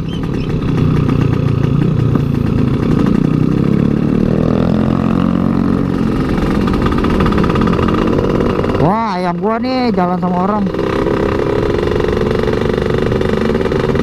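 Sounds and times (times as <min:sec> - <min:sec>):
motorcycle engine while riding: 0:00.0 - 0:14.0.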